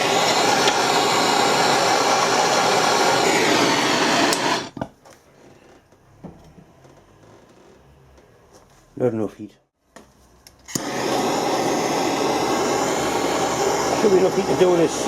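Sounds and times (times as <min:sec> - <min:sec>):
torch flame rushing: 0:00.0 - 0:04.8, 0:10.7 - 0:15.0.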